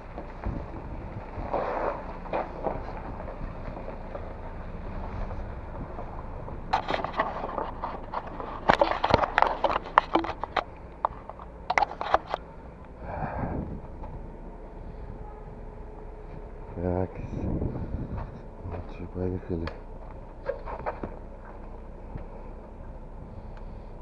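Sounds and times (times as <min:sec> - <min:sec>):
steady low rumble: 0:00.0 - 0:24.0
sharp clicks and knocks: 0:06.1 - 0:13.0.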